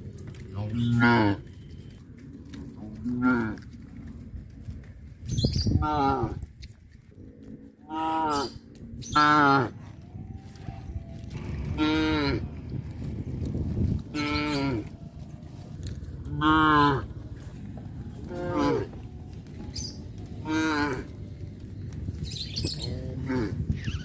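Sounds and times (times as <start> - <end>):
cows mooing: 0.6 - 1.7, 7.2 - 9.8, 11.3 - 12.6, 14.0 - 15.0, 16.2 - 17.5, 18.2 - 19.0, 20.4 - 21.2, 22.8 - 23.8.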